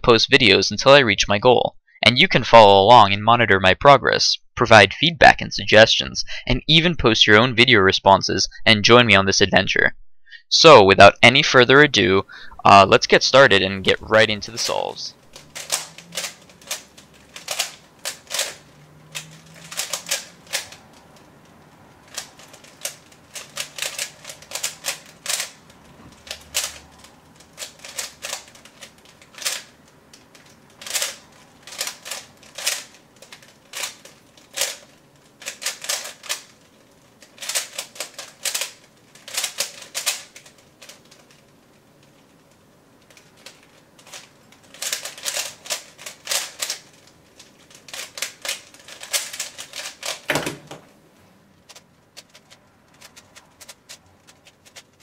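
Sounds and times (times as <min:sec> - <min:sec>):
puzzle cube plastic clicking: 0:14.1 - 0:50.8, 0:51.6 - 0:55.0.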